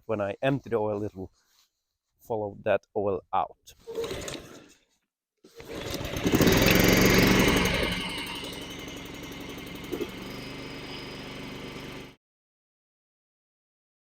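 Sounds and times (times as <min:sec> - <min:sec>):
lawnmower engine running: 0:03.9 - 0:04.6, 0:05.6 - 0:12.2.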